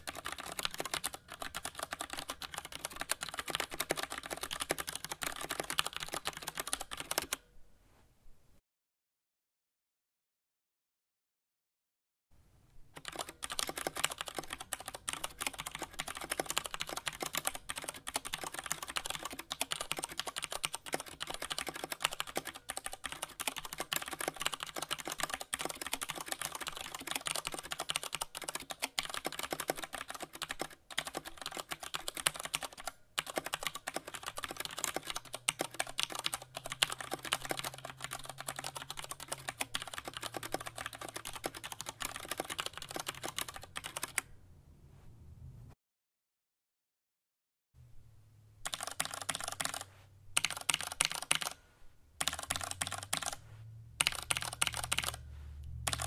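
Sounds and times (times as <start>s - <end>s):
fast typing on mechanical keyboard: 0.0s - 7.4s, 13.0s - 44.2s, 48.6s - 51.6s, 52.2s - 53.4s, 54.0s - 55.2s.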